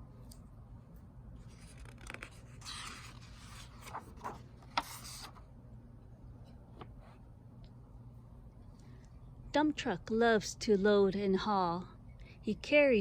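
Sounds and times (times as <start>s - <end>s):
paper pages turning: 1.4s - 5.4s.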